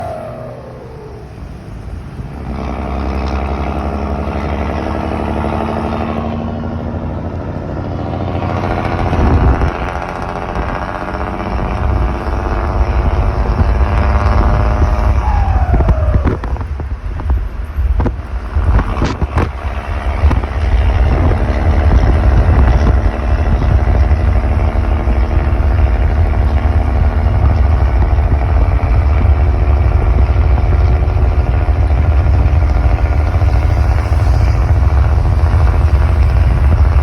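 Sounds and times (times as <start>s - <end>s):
short falling whine: 0.0s - 2.7s, 9.2s - 26.4s
diesel truck engine rumbling: 0.0s - 37.0s.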